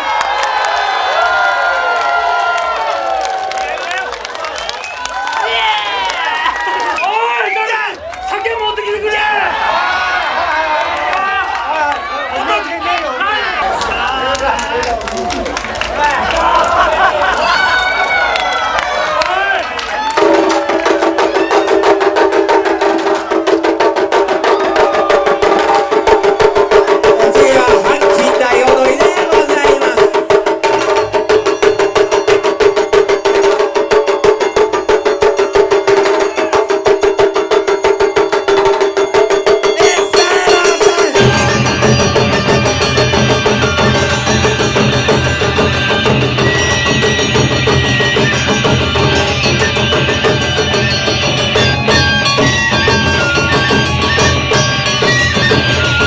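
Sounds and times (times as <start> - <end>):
fast taiko drumming: 20.0 - 56.0.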